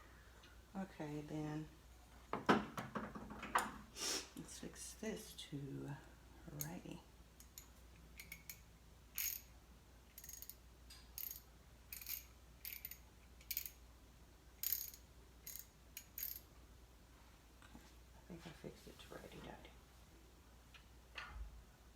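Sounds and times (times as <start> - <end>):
ratchet wrench clicking: 7.5 - 8.6, 9.2 - 9.5, 10.2 - 10.6, 11.2 - 13.8, 14.6 - 16.4.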